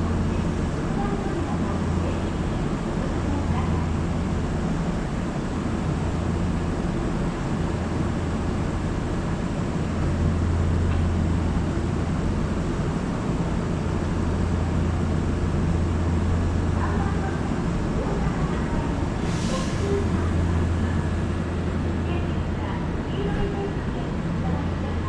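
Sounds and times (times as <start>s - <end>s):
electric train humming: 15.6s - 25.0s.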